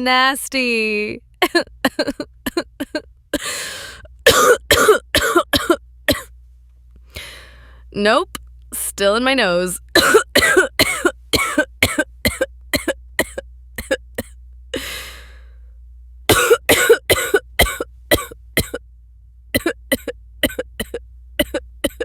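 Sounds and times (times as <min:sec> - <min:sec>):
woman coughing: 0:01.4 - 0:03.6, 0:04.2 - 0:06.3, 0:10.0 - 0:14.3, 0:16.3 - 0:18.8, 0:19.6 - 0:22.0
noisy in-breath: 0:03.4 - 0:04.1, 0:07.0 - 0:07.9, 0:14.8 - 0:15.8.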